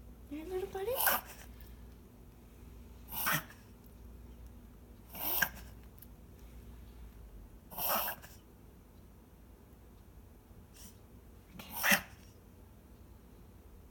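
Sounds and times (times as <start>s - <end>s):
pet coughing: 0.9s - 1.5s, 3.1s - 3.6s, 5.1s - 5.7s, 7.7s - 8.3s, 11.6s - 12.2s.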